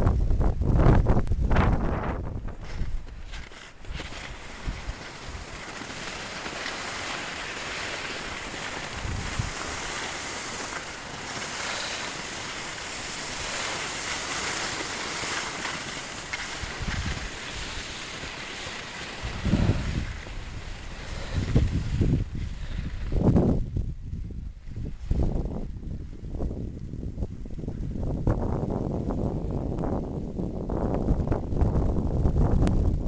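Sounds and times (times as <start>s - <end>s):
wind buffeting microphone: 0.0s - 33.0s
skis sliding over snow: 1.5s - 23.6s.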